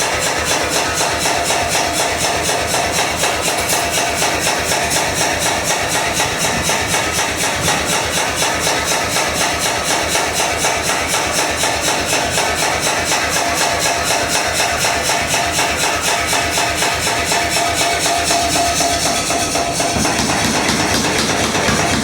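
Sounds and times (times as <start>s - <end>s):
power hammer pounding: 0.0s - 22.0s.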